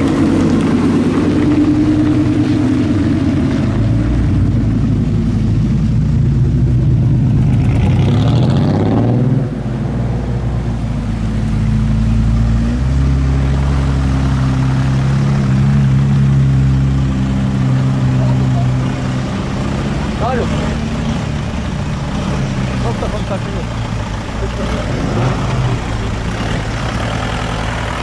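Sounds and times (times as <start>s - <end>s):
car engine revving and idling: 0.0s - 28.0s.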